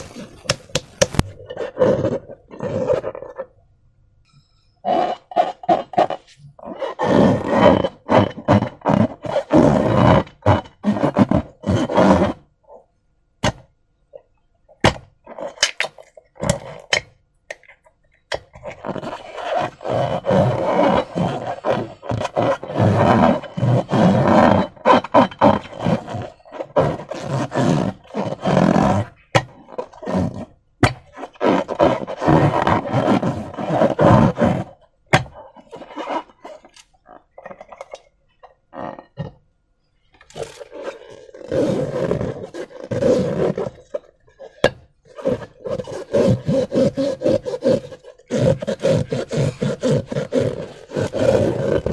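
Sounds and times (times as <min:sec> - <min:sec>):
slime squelching: 0:00.0 - 0:03.6.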